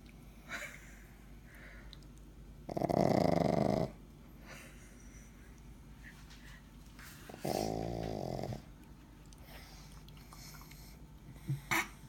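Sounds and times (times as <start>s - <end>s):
dog snoring: 2.7s - 4.0s, 7.3s - 8.7s
dog breathing quietly: 9.3s - 12.0s.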